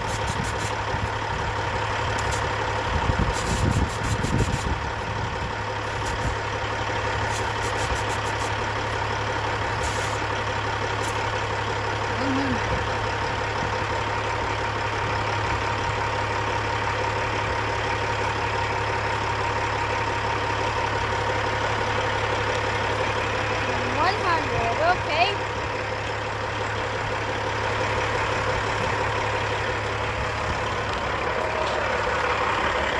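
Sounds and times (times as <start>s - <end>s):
diesel truck engine idling: 0.0s - 32.9s
short high hisses: 7.2s - 8.6s, 9.8s - 10.2s.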